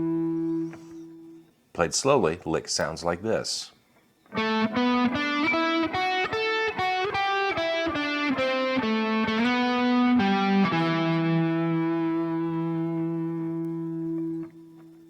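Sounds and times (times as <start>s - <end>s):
electric guitar lick: 4.3s - 14.8s.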